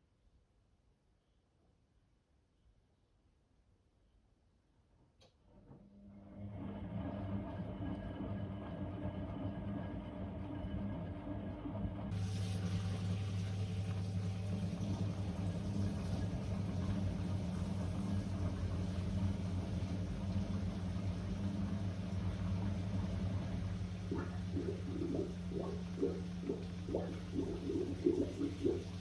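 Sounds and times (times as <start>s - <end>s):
washing machine humming: 6.3s - 29.0s
water gurgling: 23.2s - 29.0s.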